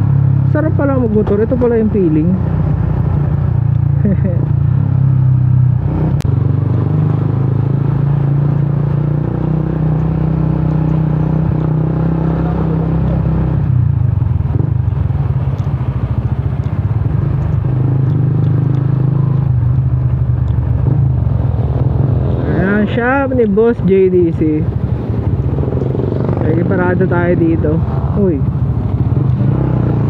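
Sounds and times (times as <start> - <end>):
motorcycle engine running: 0.0 - 30.0.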